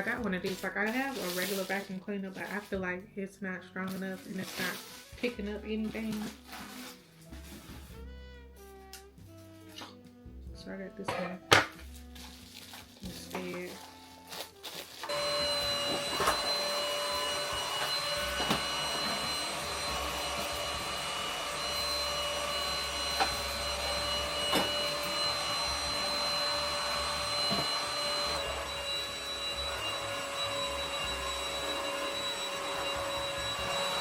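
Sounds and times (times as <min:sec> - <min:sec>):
vacuum cleaner motor whine: 0:00.0 - 0:01.8, 0:14.7 - 0:34.0.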